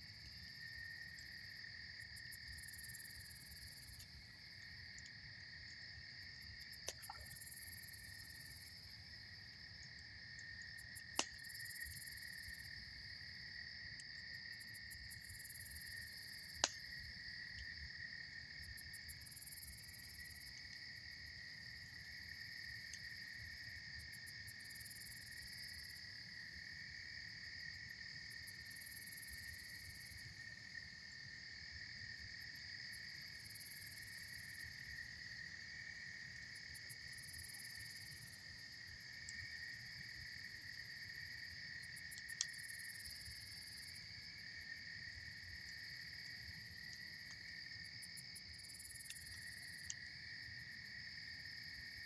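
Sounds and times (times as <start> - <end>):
insect chorus trilling: 0.1 - 52.0
campfire pops: 6.6 - 7.5, 10.4 - 12.2, 16.3 - 17.8, 42.1 - 42.7.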